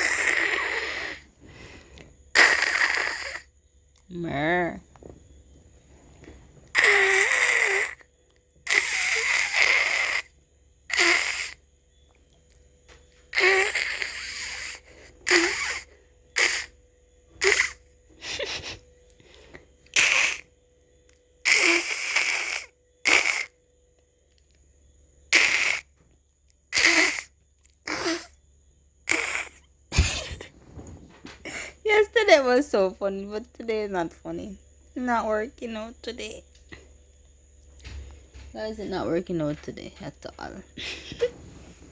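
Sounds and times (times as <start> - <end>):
woman imitating cat hiss: 0.0 - 1.3, 2.3 - 3.5, 6.7 - 8.0, 8.6 - 10.3, 10.9 - 11.6, 13.3 - 16.7, 17.4 - 18.8, 19.9 - 20.5, 21.4 - 23.6, 25.3 - 25.9, 26.7 - 28.4, 29.0 - 30.5.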